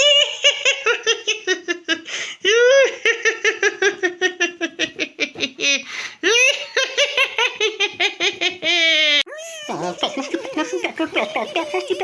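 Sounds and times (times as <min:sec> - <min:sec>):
cartoon voice drawn-out cry: 0:09.3 - 0:10.1.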